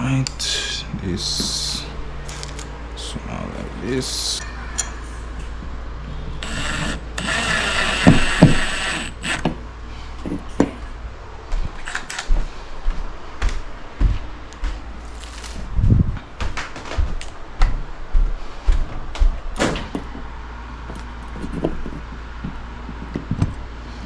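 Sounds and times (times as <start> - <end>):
harsh scraping of tools: 6.3 - 9.5, 11.8 - 12.2.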